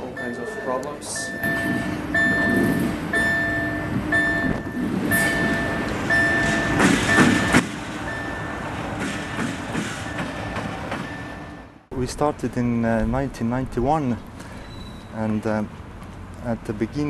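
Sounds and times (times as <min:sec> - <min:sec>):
repeating electronic beep: 0:00.1 - 0:08.6.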